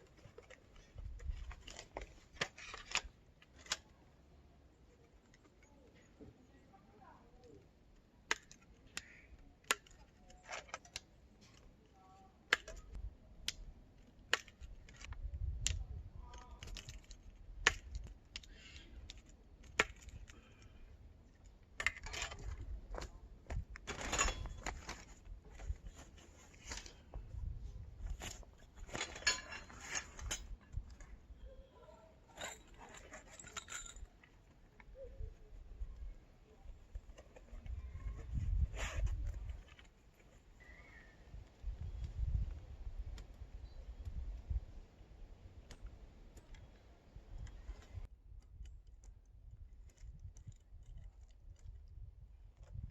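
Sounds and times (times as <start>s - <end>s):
rustling: 22.0s - 35.1s
sharp clicks and metallic clinks: 28.9s - 31.0s, 32.3s - 34.4s.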